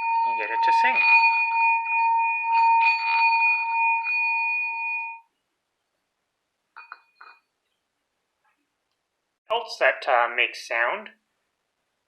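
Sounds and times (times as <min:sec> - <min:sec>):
mallet scraping rim: 0:00.0 - 0:05.2
singing bowl ringing: 0:00.0 - 0:05.3.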